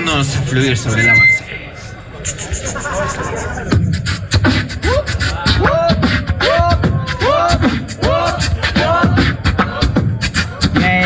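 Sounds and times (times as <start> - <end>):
person beatboxing: 2.1 - 11.0.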